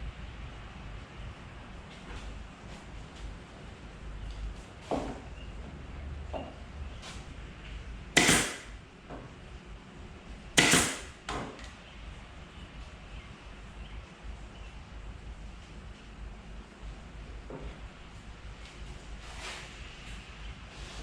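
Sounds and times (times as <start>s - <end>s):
pneumatic nailer firing: 8.2s - 8.8s, 10.6s - 11.5s.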